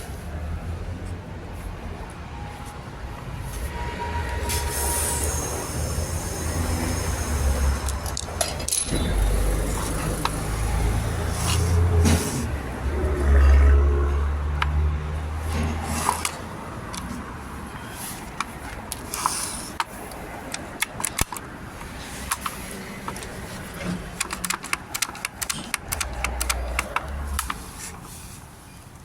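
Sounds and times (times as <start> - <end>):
metallic clicks and clinks: 7.8 - 10.4.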